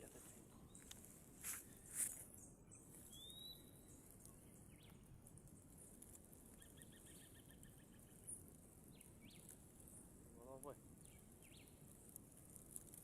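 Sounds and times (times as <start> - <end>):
rapid bird chirps: 2.3 - 5.0, 5.8 - 9.5, 11.0 - 11.9
rising whistled bird call: 3.1 - 3.7.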